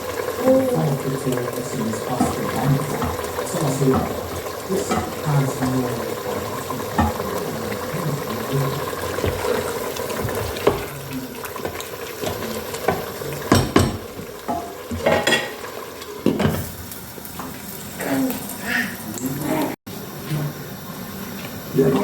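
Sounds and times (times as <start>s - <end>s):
food sizzling in a pot: 0.0s - 22.0s
spoon knocking against pot: 6.9s - 7.3s, 11.6s - 15.6s.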